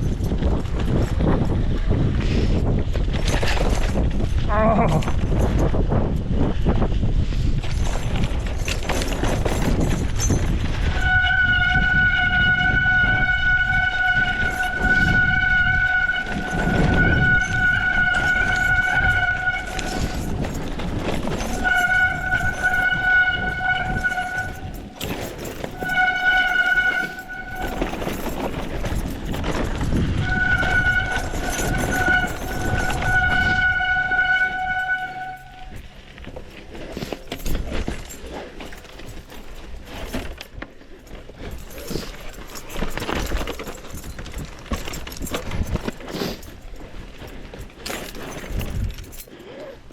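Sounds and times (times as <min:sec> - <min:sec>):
bike rolling on rough trail: 0:00.0 - 0:49.9
bike brakes squealing: 0:09.6 - 0:35.9.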